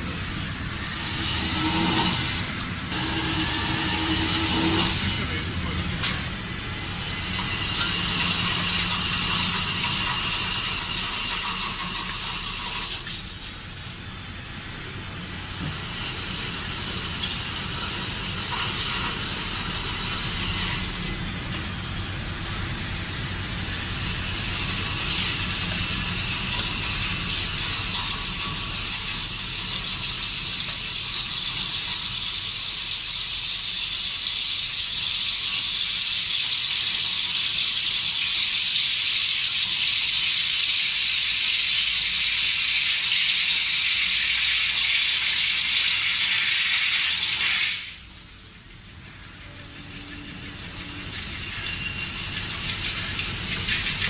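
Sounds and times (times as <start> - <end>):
machinery hissing and squealing: 47.7 - 54.0.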